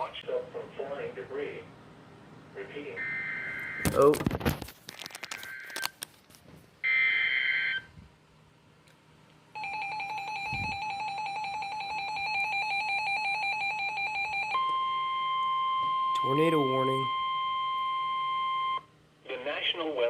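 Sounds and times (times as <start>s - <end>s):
steady single-pitch warning tone: 9.6s - 19.0s
pulsing electronic alarm beep: 13.6s - 18.9s.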